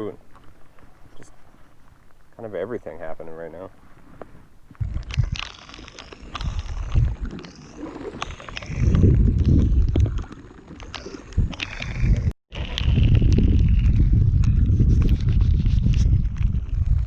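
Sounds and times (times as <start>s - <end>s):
wind buffeting microphone: 4.7s - 5.6s, 6.2s - 7.5s, 8.2s - 17.0s.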